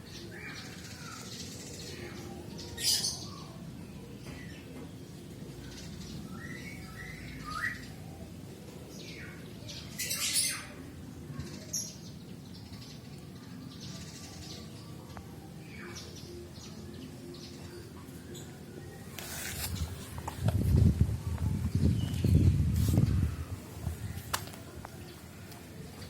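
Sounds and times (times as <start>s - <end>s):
birds chirping and squawking: 0.0s - 3.6s, 9.0s - 24.3s
low background noise: 0.0s - 26.0s
rustling noise: 19.0s - 25.1s.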